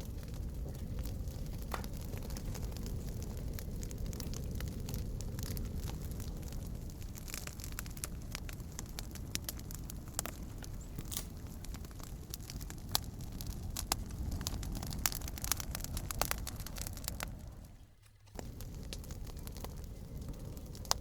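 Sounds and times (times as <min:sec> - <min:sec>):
campfire crackling and popping: 0:00.0 - 0:21.0.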